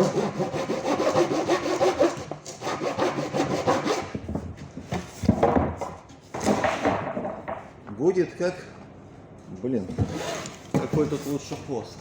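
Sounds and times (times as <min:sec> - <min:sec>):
hand saw cutting wood: 0:00.0 - 0:04.2, 0:10.1 - 0:11.5.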